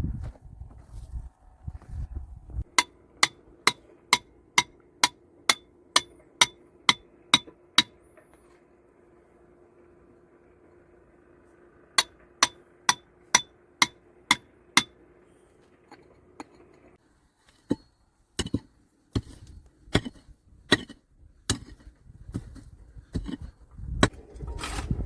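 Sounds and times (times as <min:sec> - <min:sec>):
hammer striking stone: 0:02.7 - 0:08.0, 0:12.0 - 0:15.0, 0:17.7 - 0:19.4.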